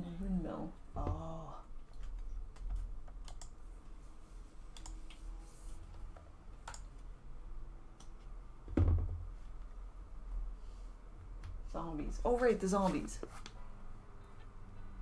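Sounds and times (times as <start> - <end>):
louder thump: 8.7 - 9.3.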